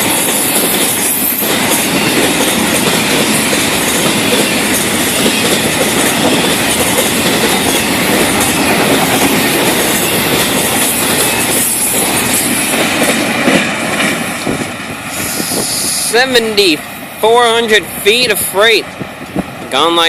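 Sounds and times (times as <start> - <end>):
freight train wheels clickety-clack: 0.0 - 16.4.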